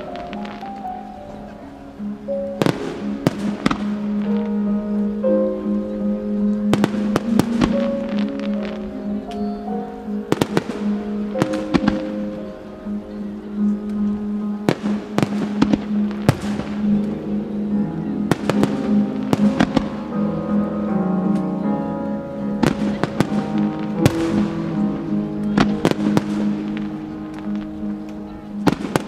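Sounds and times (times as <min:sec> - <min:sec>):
fireworks crackle: 0:00.0 - 0:04.7, 0:06.7 - 0:09.4, 0:10.2 - 0:12.8, 0:13.9 - 0:17.2, 0:18.3 - 0:20.2, 0:22.6 - 0:29.0
fireworks bangs: 0:02.5 - 0:04.6, 0:06.7 - 0:08.8, 0:10.2 - 0:12.7, 0:14.6 - 0:17.2, 0:18.3 - 0:20.2, 0:22.6 - 0:27.9, 0:28.5 - 0:29.0.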